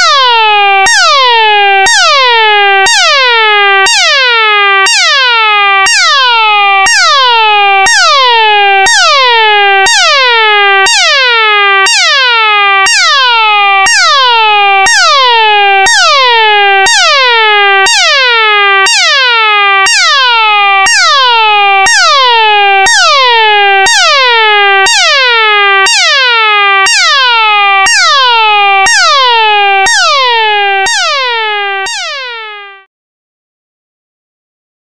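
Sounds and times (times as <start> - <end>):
electronic alarm tone swooping down: 26.9 - 32.8.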